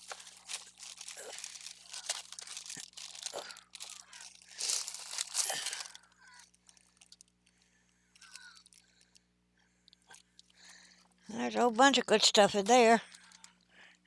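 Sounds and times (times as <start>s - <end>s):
plastic bag rustling: 0.0s - 7.3s.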